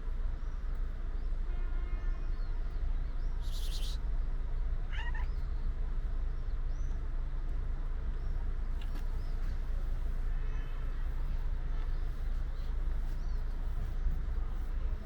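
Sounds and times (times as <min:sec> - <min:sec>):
low background rumble: 0:02.0 - 0:15.0
hiss-like noise: 0:03.3 - 0:04.1
small high chirps: 0:03.4 - 0:04.0
cat meowing: 0:04.9 - 0:05.4.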